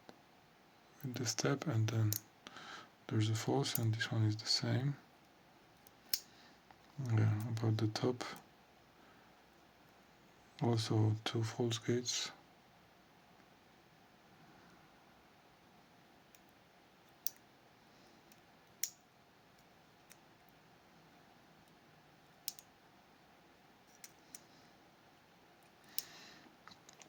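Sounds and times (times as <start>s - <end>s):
small metal lock parts clicking: 22.4s - 22.7s, 23.9s - 24.4s.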